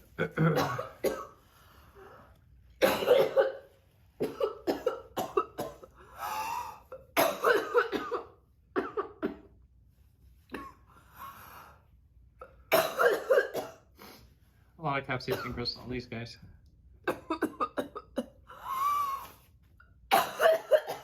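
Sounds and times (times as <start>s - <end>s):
woman coughing: 0.2s - 1.4s, 2.8s - 6.0s, 7.0s - 9.5s, 12.4s - 13.9s, 15.3s - 15.6s, 17.1s - 18.5s, 20.1s - 21.0s.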